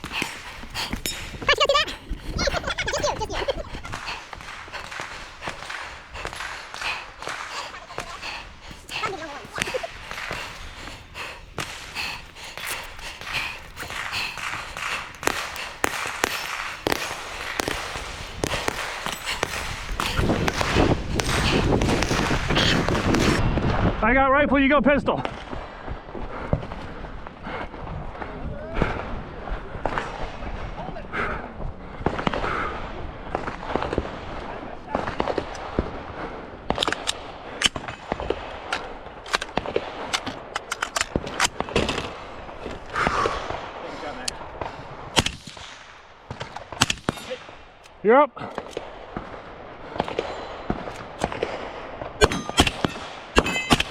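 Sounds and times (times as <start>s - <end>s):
gunshots: 0.0s - 23.8s, 36.7s - 53.9s.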